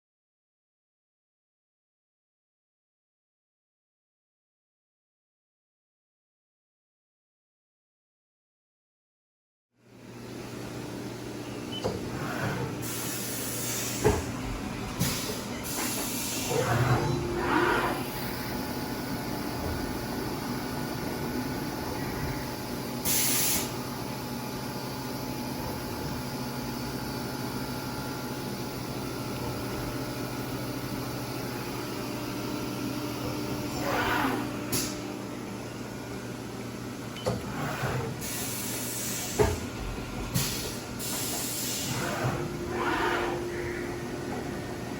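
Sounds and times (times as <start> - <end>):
milling machine humming: 10.5 - 44.9
air hiss: 23.0 - 23.7.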